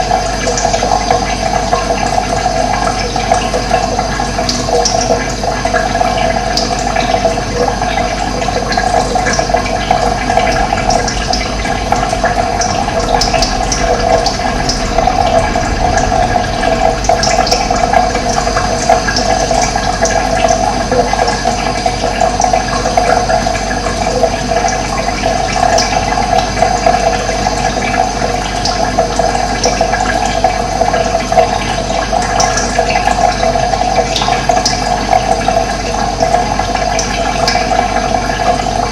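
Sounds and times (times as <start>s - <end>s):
water rushing: 0.0s - 34.4s.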